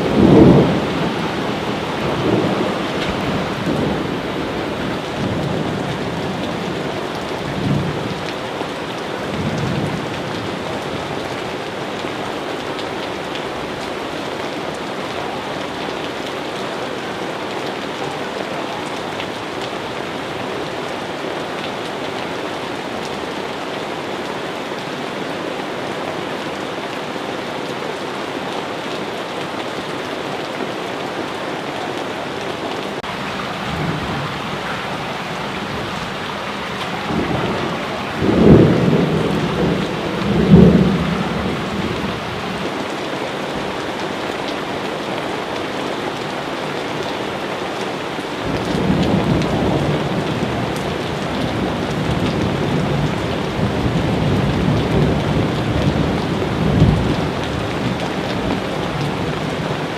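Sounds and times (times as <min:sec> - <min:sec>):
low rumbles of thunder: 0:00.0 - 0:08.3, 0:33.3 - 0:42.7
steady rain pouring: 0:00.0 - 0:59.9.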